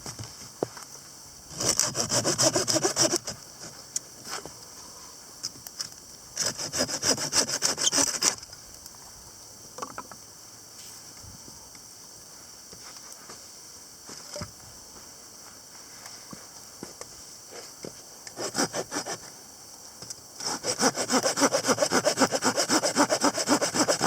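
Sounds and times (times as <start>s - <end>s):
hand saw cutting wood: 1.5s - 3.4s, 6.4s - 8.4s, 18.4s - 19.2s, 20.4s - 24.0s.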